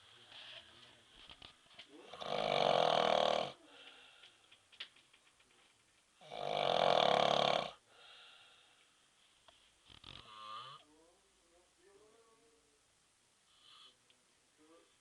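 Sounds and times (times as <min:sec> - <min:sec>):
man snoring loudly: 0:02.1 - 0:03.6, 0:06.2 - 0:07.8.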